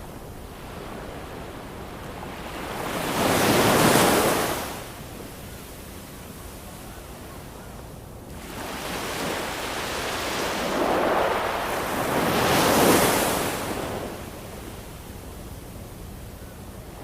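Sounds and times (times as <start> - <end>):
ocean waves breaking: 0.0 - 5.0, 8.3 - 14.6.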